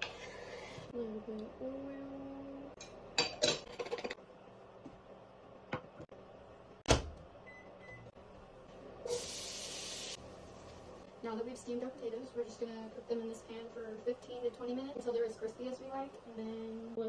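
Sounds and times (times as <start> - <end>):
pans and utensils clattering: 3.2 - 4.2
hiss: 9.1 - 10.2.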